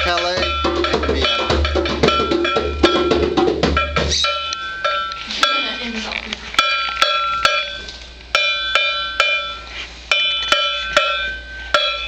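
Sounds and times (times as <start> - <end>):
tuned percussion struck with mallet: 0.0 - 5.9.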